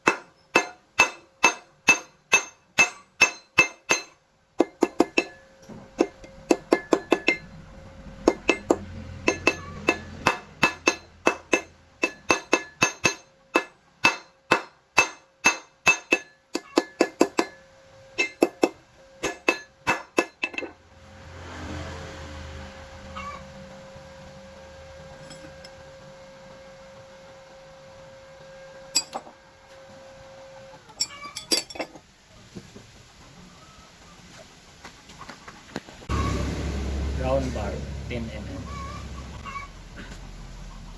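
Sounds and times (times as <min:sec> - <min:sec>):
hammer striking steel: 0:00.0 - 0:07.6, 0:08.2 - 0:20.8, 0:28.9 - 0:29.3.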